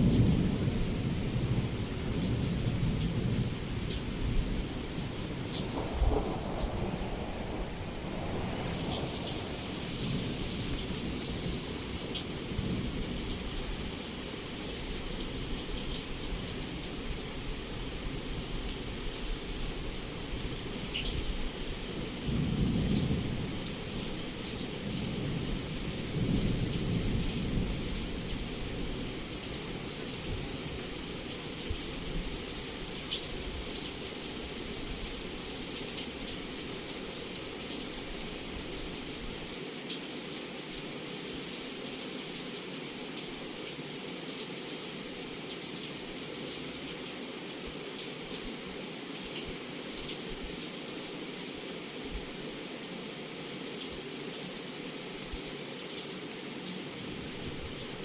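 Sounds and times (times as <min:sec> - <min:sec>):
low thunder rumbles: 0:00.0 - 0:11.5
heavy rain: 0:00.0 - 0:58.0.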